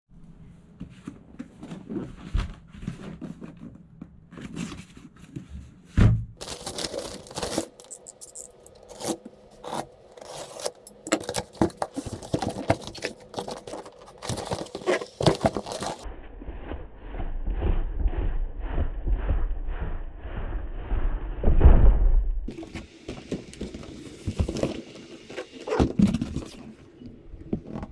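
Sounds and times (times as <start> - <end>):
thump: 6.0 - 6.4, 21.4 - 22.2
packaging tearing and rustling: 6.4 - 16.0.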